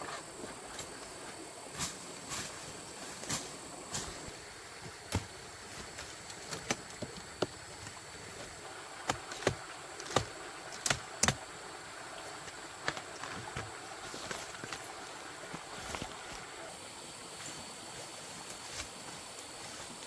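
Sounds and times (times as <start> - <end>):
high insect drone: 0.0 - 20.0.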